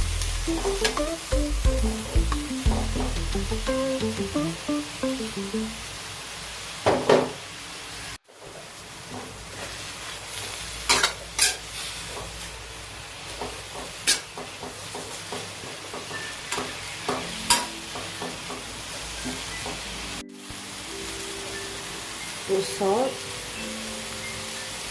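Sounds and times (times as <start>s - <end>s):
leaves sizzling in hot oil: 6.2s - 18.2s.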